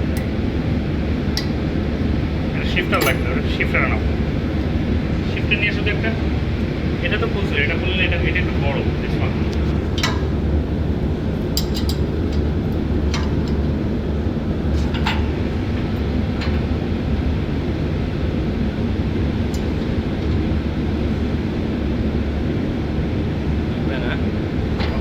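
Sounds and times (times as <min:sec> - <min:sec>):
low machinery drone: 0:00.0 - 0:25.0.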